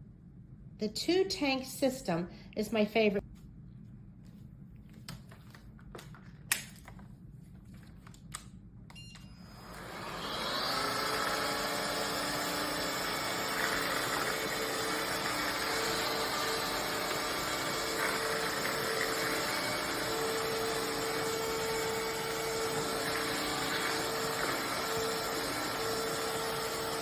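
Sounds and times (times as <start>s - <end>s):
vacuum mop motor whine: 9.4s - 27.0s.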